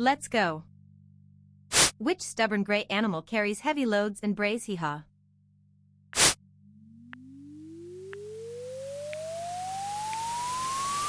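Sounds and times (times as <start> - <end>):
hiss: 1.7 - 1.9, 6.2 - 6.4
rising electronic tone: 6.2 - 11.0
low steady drone: 6.6 - 11.0
faint ticks: 8.1 - 11.0.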